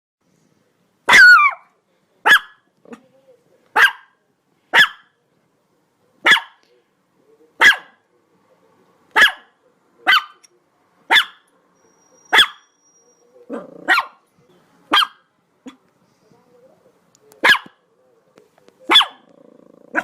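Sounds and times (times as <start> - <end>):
dog barking: 1.1 - 2.7, 3.8 - 5.2, 6.2 - 6.6, 7.6 - 8.0, 9.1 - 10.4, 11.1 - 11.5, 12.3 - 12.7, 13.5 - 14.2, 14.9 - 15.8, 17.4 - 17.8, 18.9 - 19.3.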